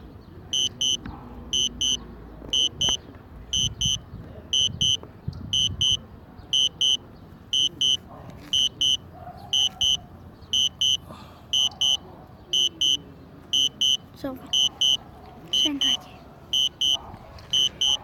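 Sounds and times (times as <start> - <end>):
high-pitched beeps in pairs: 0.5 - 4.0, 4.6 - 8.0, 8.6 - 9.0, 9.6 - 11.0, 11.6 - 12.0, 12.6 - 15.0, 15.6 - 16.0, 16.6 - 17.0, 17.6 - 18.0.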